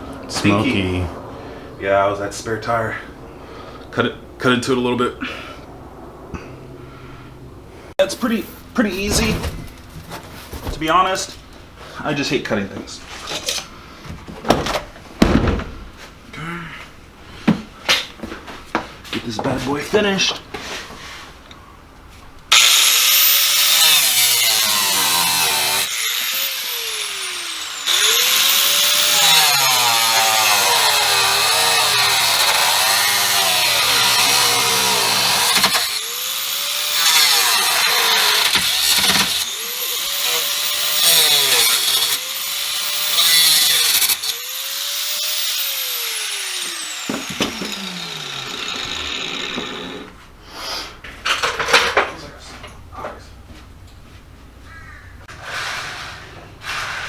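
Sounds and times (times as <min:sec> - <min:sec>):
power drill drilling into metal: 0:22.5 - 0:50.1.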